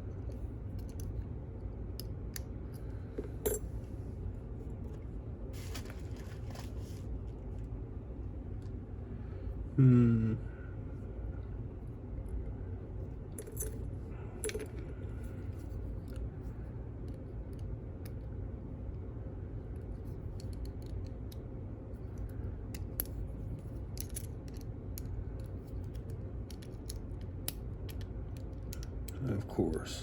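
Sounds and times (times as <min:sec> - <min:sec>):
low hum: 0:00.0 - 0:30.0
metal tools clicking on padlock: 0:22.1 - 0:25.2.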